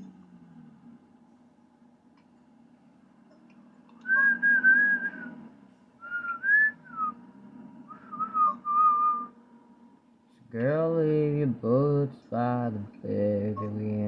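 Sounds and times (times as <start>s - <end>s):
low steady hum: 0.0s - 14.0s
person whistling a tune: 4.0s - 5.3s, 6.0s - 7.1s, 8.0s - 9.3s.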